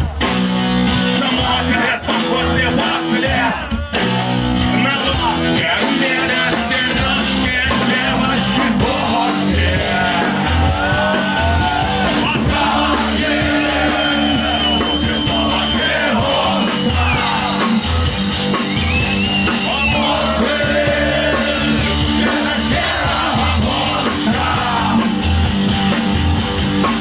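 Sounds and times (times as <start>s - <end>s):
punk rock band playing: 0.0s - 27.0s
person singing: 4.7s - 17.8s, 19.5s - 25.2s.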